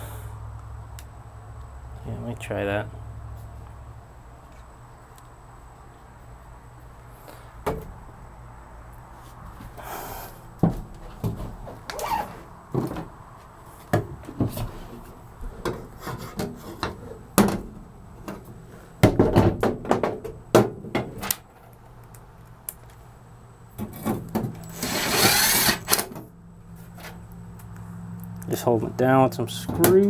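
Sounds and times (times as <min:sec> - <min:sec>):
power driver driving screws: 0:24.6 - 0:26.1.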